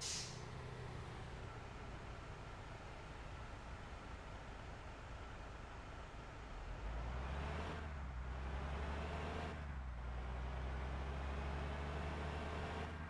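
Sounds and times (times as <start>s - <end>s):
bus engine drone: 0.0s - 13.0s
road noise: 0.0s - 13.0s.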